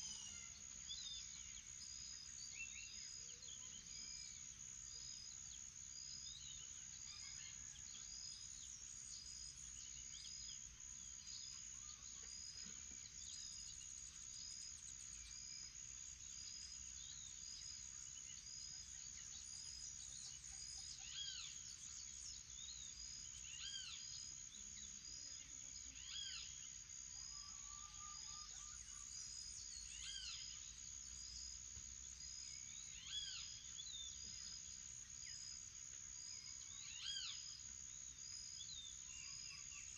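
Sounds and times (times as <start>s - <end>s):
short insect chirp: 0.0s - 39.9s.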